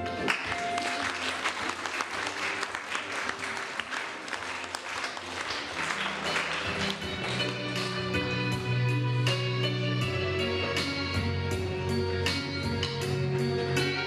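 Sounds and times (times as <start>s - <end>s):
audience applauding: 0.0s - 8.5s
background music: 0.0s - 14.0s.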